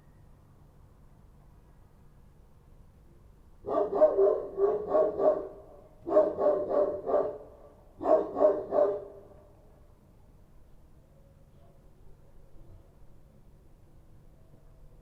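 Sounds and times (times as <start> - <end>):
dog barking: 3.6 - 9.3.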